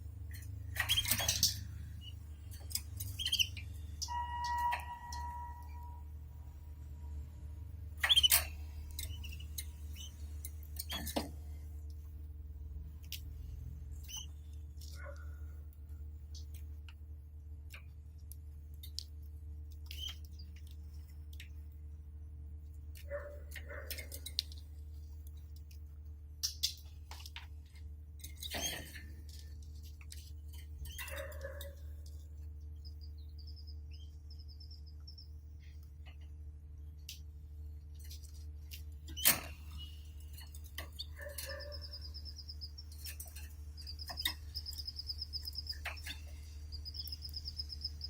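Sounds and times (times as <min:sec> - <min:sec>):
steady low hum: 0:00.0 - 0:48.0
birds moving in cage clicks: 0:00.3 - 0:01.8, 0:22.9 - 0:32.3, 0:37.9 - 0:47.8
canaries chirping: 0:00.7 - 0:06.0, 0:08.0 - 0:11.2, 0:14.0 - 0:14.4, 0:19.8 - 0:20.5, 0:32.8 - 0:35.4, 0:39.1 - 0:48.0
rapid high bird trill: 0:41.0 - 0:48.0.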